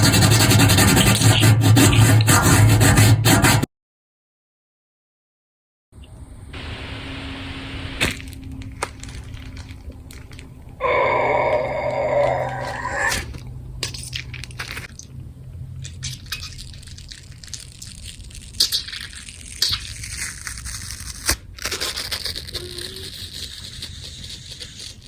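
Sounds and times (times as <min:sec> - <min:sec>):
wet crunching and liquid noises: 0:08.0 - 0:24.0
loud pitched cry: 0:10.8 - 0:13.3.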